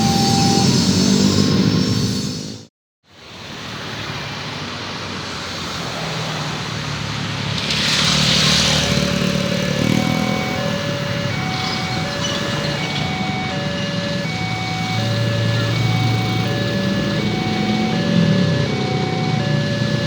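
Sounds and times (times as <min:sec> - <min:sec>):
electronic beeping warning tone: 0:00.0 - 0:01.2, 0:08.8 - 0:20.0
road traffic engine hum: 0:00.0 - 0:20.0.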